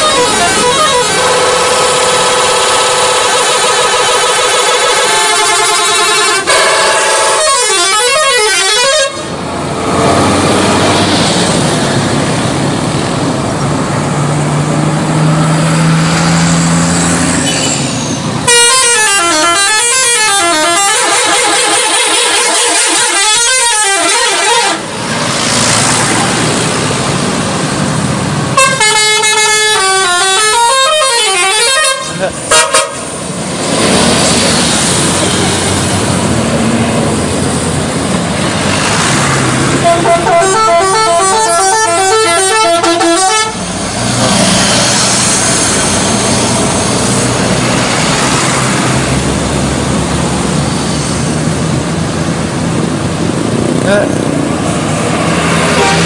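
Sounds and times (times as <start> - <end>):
musical air horns warbling: 0.0 - 9.4, 17.4 - 25.0, 28.6 - 33.1, 39.7 - 47.2, 55.6 - 56.0
noisy rush: 9.1 - 18.5, 24.6 - 28.9, 32.2 - 56.0.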